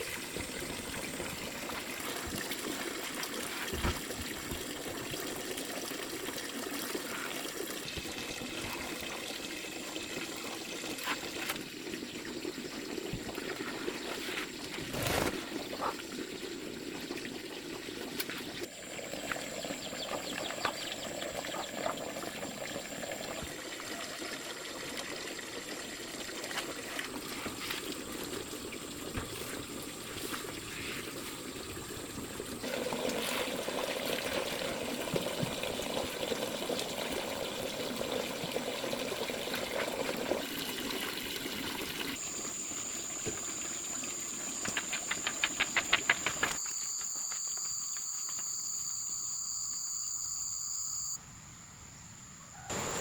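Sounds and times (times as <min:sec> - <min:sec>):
water trickling and pouring: 0:00.0 - 0:45.5
thin high tone: 0:46.4 - 0:51.2.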